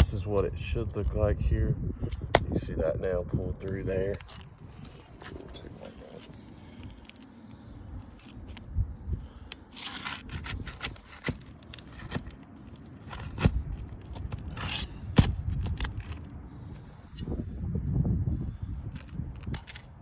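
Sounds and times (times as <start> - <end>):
metal scraping against shingles: 3.6 - 17.2.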